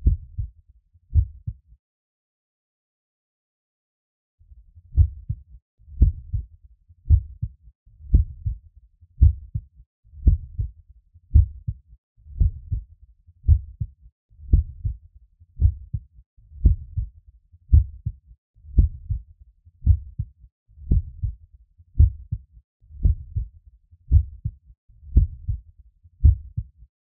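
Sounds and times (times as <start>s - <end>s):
heartbeat through stethoscope: 0.0s - 1.6s, 4.9s - 6.5s, 7.1s - 8.6s, 9.2s - 9.6s, 10.2s - 15.0s, 15.6s - 16.0s, 16.6s - 17.1s, 17.7s - 21.4s, 22.0s - 22.4s, 23.0s - 23.5s, 24.1s - 25.6s, 26.2s - 26.7s.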